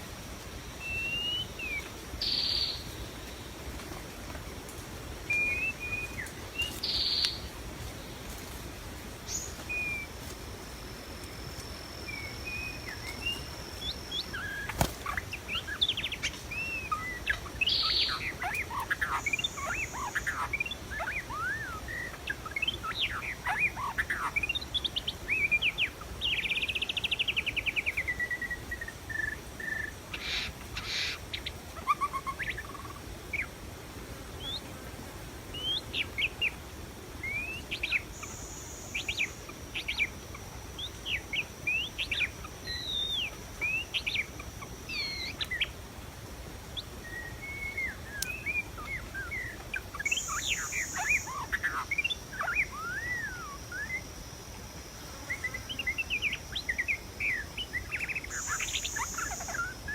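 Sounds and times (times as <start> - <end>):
bird singing whistled phrases: 0.8 - 2.8, 47.0 - 54.0.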